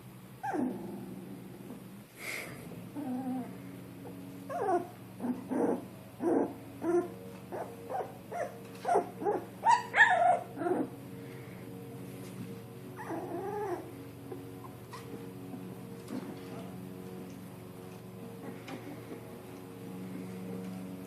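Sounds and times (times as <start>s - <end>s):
low steady hum: 0.0s - 21.0s
puppies whimpering and squeaking: 0.4s - 0.7s, 4.5s - 11.4s, 13.0s - 15.2s, 18.4s - 20.4s.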